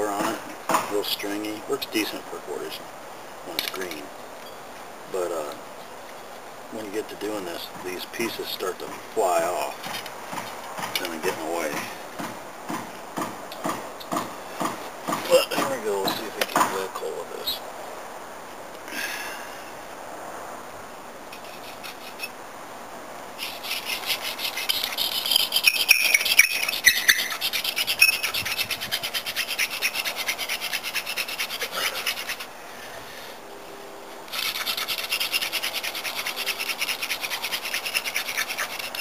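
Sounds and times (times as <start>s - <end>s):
wooden spindle rubbing: 21.3s - 22.4s, 23.4s - 32.5s, 34.3s - 39.0s.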